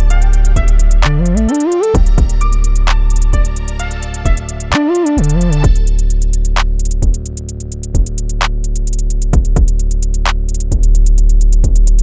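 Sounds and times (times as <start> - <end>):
electronic music: 0.0 - 8.1.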